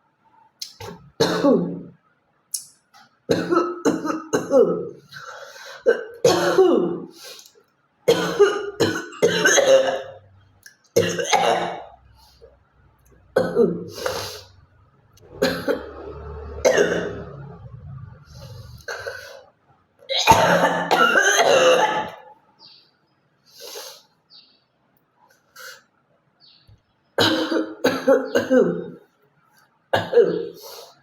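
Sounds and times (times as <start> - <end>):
woman coughing: 1.2 - 1.8, 3.3 - 4.9, 5.9 - 7.1, 8.1 - 10.2, 11.0 - 11.8, 13.4 - 13.9, 15.4 - 15.9, 20.1 - 22.3, 27.2 - 29.0, 30.0 - 30.6
woman clearing throat: 1.2 - 1.9, 3.3 - 5.0, 5.9 - 7.1, 8.1 - 10.2, 11.0 - 11.9, 13.4 - 13.9, 15.3 - 15.9, 20.1 - 22.3, 27.2 - 29.0, 30.0 - 30.6.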